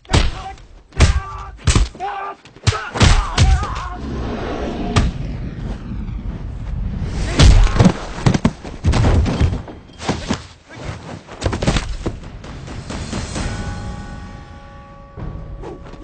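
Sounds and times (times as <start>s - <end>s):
background music: 12.1s - 16.0s.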